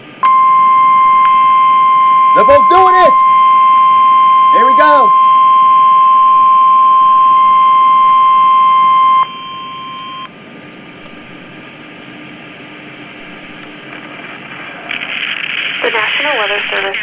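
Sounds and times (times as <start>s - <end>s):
weather radio alarm tone: 0.2s - 10.3s
faint radio hiss: 12.9s - 17.0s.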